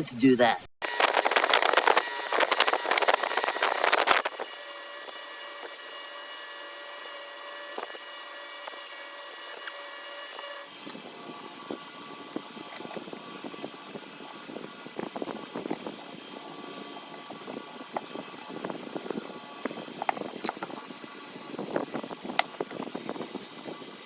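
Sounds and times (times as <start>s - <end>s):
wire wheel grinding screw: 0.8s - 24.0s
wire wheel whining freely: 0.8s - 24.0s.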